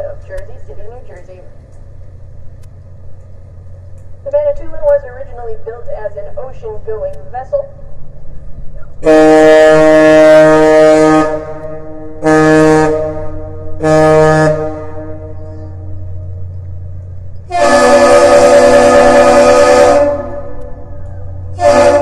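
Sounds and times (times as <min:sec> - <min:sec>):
ship horn blasts: 0:00.0 - 0:22.0
second horn long blast: 0:09.0 - 0:16.5, 0:17.4 - 0:22.0.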